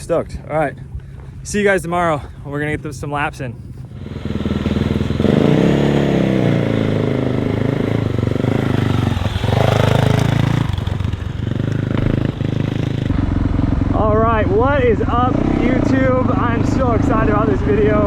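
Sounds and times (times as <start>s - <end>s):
motocross engine revving: 3.9s - 18.0s.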